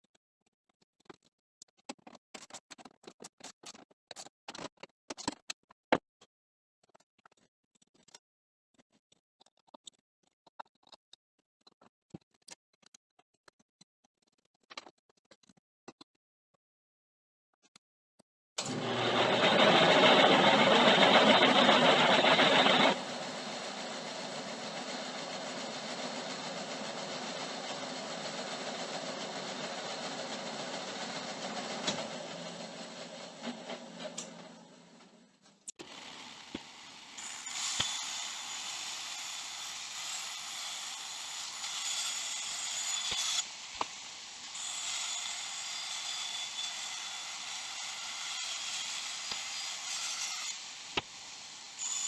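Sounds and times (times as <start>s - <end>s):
band saw running: 18.6s - 35.2s, 35.8s - 43.6s.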